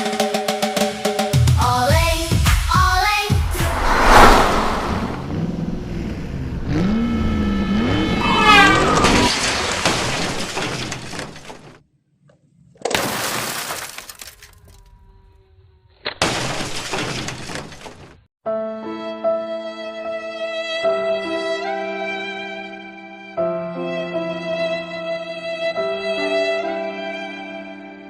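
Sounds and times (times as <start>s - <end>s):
loud crash and shattering: 9.3s - 11.2s.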